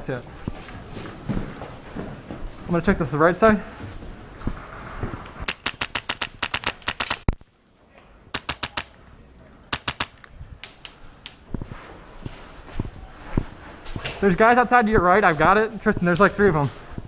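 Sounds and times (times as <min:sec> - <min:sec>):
airsoft gun firing bursts: 0:05.4 - 0:07.4, 0:08.4 - 0:08.9, 0:09.7 - 0:10.3.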